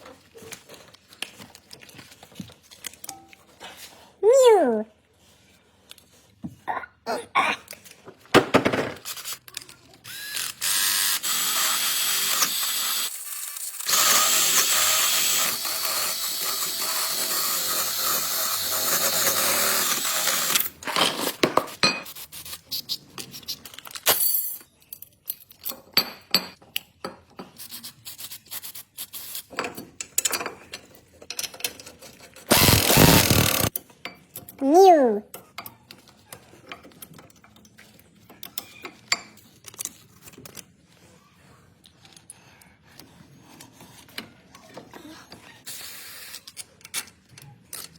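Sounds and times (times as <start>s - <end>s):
power tool running: 10.1s - 20.7s, 32.5s - 33.7s.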